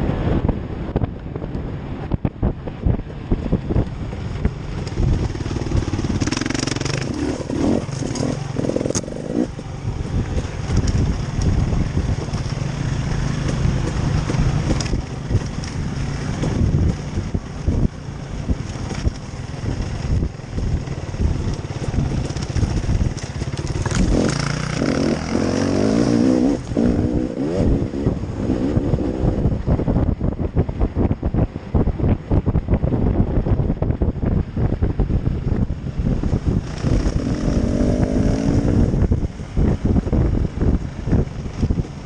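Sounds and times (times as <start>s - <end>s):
off-road vehicle engine revving: 4.4s - 29.6s, 36.0s - 41.2s
knocks and rattles: 10.0s - 17.8s.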